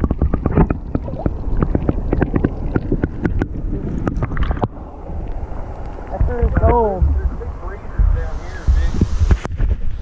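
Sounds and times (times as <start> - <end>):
water sloshing and splashing: 0.0 - 7.6.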